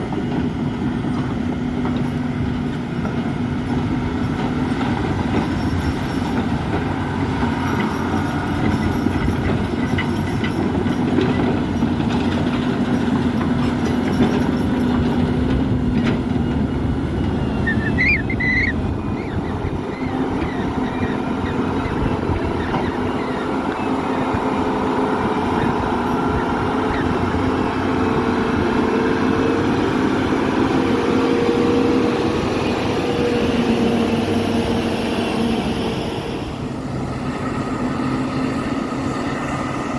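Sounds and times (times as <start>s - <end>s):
excavator engine and hydraulics: 0.0s - 39.9s
high squeak: 17.4s - 24.7s.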